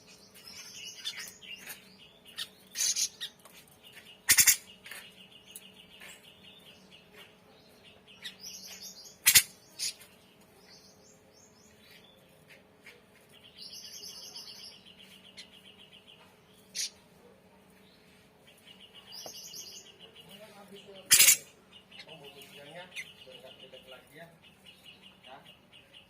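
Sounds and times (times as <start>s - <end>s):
loud sharp bird calls: 0.0s - 7.2s, 7.9s - 10.1s, 10.7s - 17.0s, 18.6s - 26.0s
bird singing trilled phrases: 0.0s - 12.4s, 13.3s - 17.0s, 18.5s - 26.0s.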